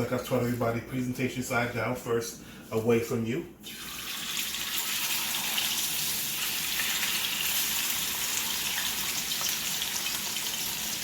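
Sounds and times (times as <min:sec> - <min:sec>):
chicken sizzling in a hot pan: 0:04.7 - 0:11.0.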